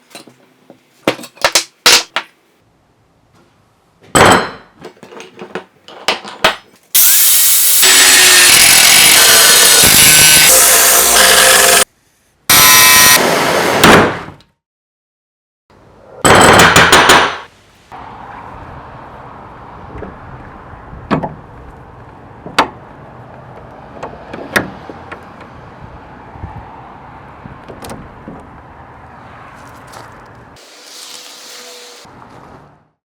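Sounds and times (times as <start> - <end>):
loud harsh burst of noise: 7.0 - 11.9, 12.5 - 13.8.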